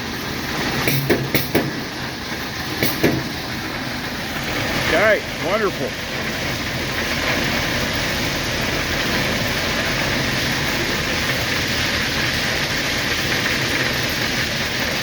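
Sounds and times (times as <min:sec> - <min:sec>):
diesel locomotive rumbling: 0:00.0 - 0:15.0.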